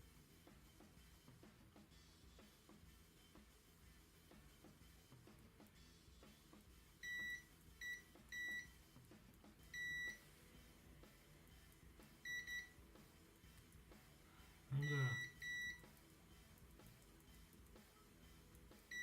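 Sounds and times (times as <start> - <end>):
continuity tester beeping: 7.0 - 8.8, 9.6 - 10.4, 12.2 - 12.8, 14.7 - 16.0, 18.8 - 19.0.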